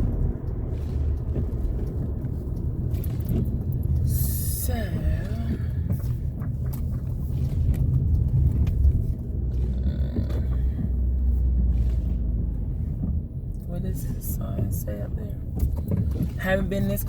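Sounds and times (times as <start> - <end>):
car engine and tyres rumbling: 0.0 - 17.0.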